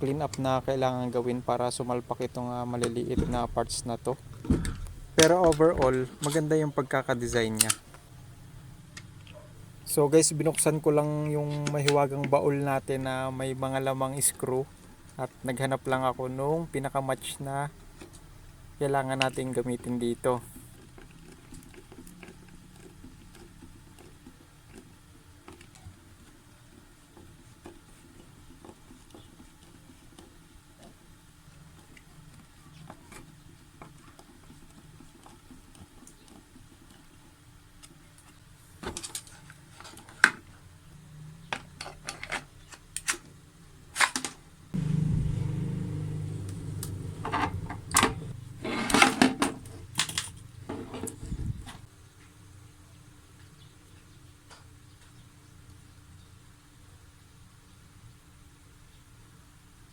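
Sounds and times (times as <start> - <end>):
small motor running: 44.8 - 47.3.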